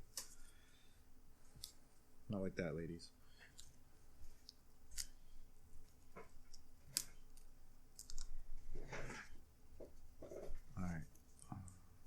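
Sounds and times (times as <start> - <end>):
small plastic parts clicking: 6.5 - 8.4.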